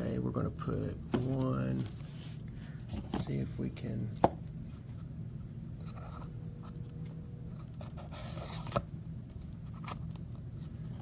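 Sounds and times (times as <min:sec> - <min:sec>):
low room hum: 0:00.0 - 0:11.0
cards scraping and rustling: 0:01.1 - 0:03.5, 0:05.8 - 0:11.0.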